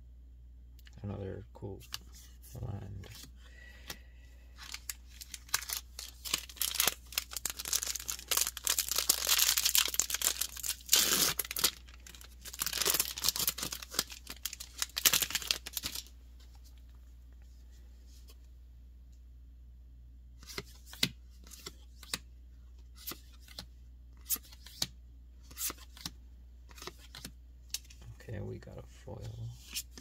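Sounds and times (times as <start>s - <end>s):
foil wrapper tearing and crinkling: 4.6s - 16.1s.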